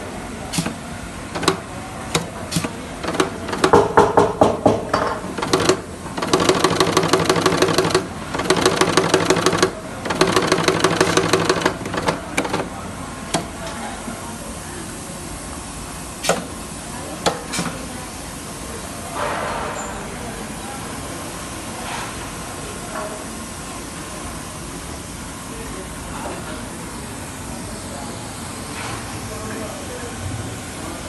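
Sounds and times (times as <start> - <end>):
sewing machine rattling: 1.4 - 4.2, 5.3 - 12.7.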